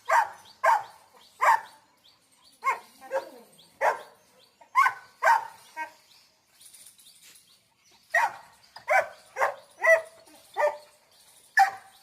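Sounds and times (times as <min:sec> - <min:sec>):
dog barking: 0:00.0 - 0:01.7, 0:02.6 - 0:04.1, 0:04.8 - 0:05.6, 0:08.2 - 0:10.8.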